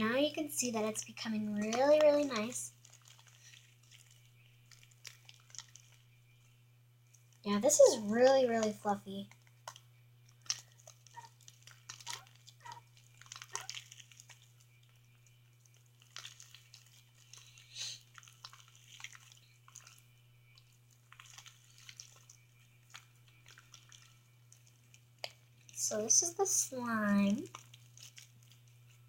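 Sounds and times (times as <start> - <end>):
slime squishing and crackling: 0.0 - 29.0
steady low hum: 0.0 - 29.0.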